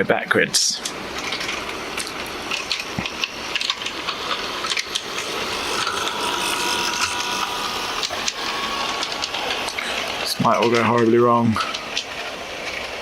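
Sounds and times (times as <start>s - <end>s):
thin steady whine: 0.0s - 13.0s
model train motor whirring: 0.8s - 13.0s.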